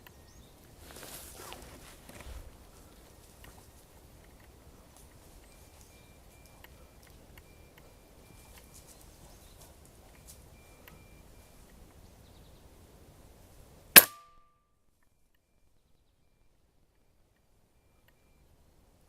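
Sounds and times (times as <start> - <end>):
faint outdoor ambience: 0.0 - 19.0
small ticks: 2.1 - 11.0
air rifle shot: 14.0 - 14.3.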